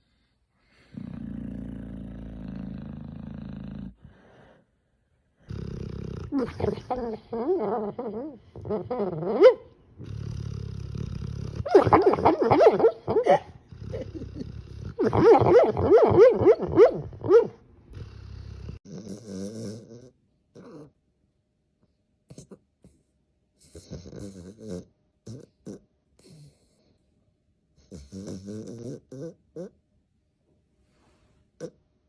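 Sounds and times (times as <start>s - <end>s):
dog grumbling and whining: 0.9s - 4.1s, 5.4s - 21.0s, 23.6s - 26.5s, 27.8s - 29.8s.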